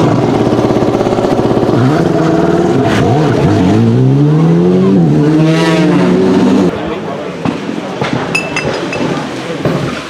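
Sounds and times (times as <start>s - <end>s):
rally car engine revving: 0.0s - 6.8s.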